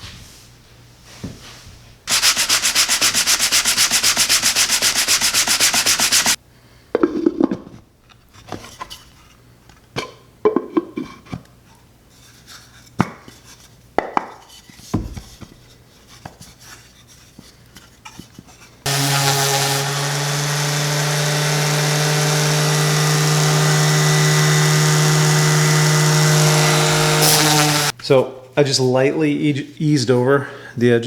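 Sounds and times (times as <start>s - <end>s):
sanding wood: 2.1s - 6.4s, 18.9s - 27.9s.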